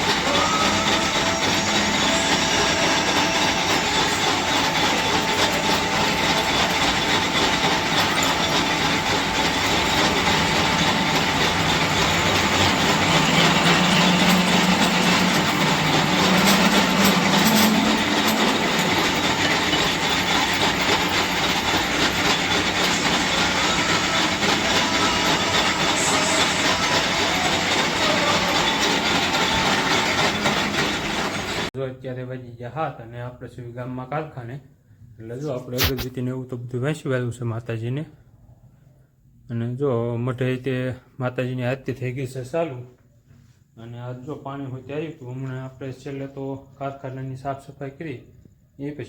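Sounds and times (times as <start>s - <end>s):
machine tool rattling: 0.0s - 31.7s, 35.8s - 36.0s.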